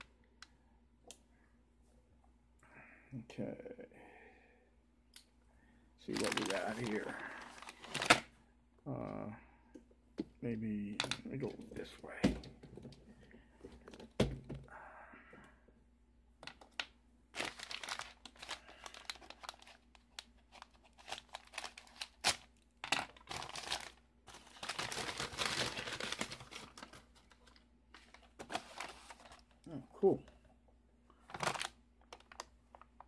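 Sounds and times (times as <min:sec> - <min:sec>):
plastic bags crinkling: 0:06.0 - 0:08.3, 0:16.5 - 0:29.6, 0:31.3 - 0:33.0.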